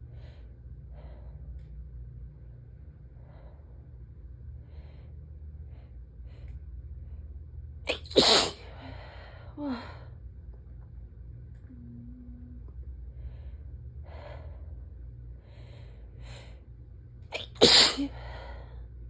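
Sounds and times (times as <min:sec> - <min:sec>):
faint regular breathing: 0:03.0 - 0:07.6, 0:08.6 - 0:10.2, 0:12.9 - 0:17.0, 0:18.0 - 0:19.0
person sneezing: 0:07.9 - 0:08.6, 0:17.4 - 0:18.2.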